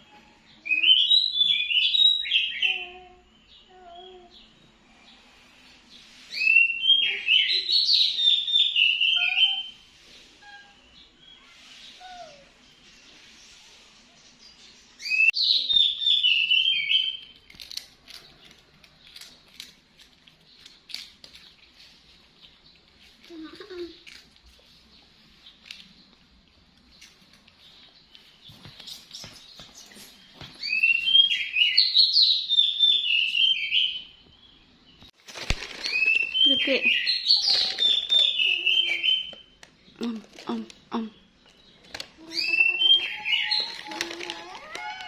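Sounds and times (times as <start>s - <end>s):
bird chirping: 0.0s - 35.2s, 35.8s - 45.0s
rustling: 35.2s - 36.6s, 41.5s - 45.0s.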